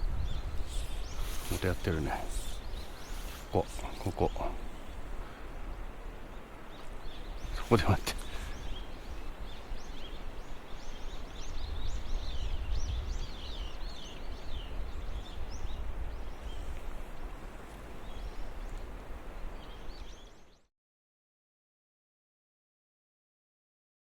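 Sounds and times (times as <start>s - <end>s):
songbird singing: 0.0s - 20.7s
river rushing: 0.5s - 12.3s.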